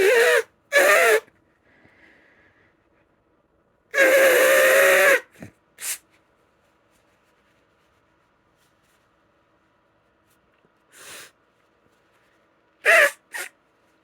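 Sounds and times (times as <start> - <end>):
nose blowing: 0.0 - 1.3, 4.0 - 6.0, 12.9 - 13.5
short breaths: 1.6 - 2.8.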